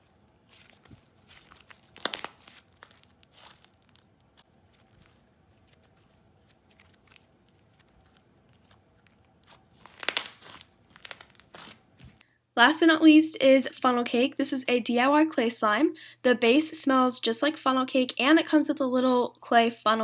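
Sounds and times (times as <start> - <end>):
slime squished by hand crackling: 0.5 - 12.1.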